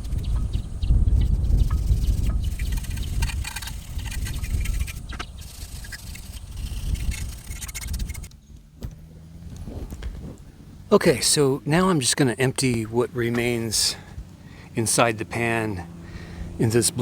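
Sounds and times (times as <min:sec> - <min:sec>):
low rumble: 0:00.0 - 0:17.0
scraping and rubbing on metal: 0:01.6 - 0:08.3.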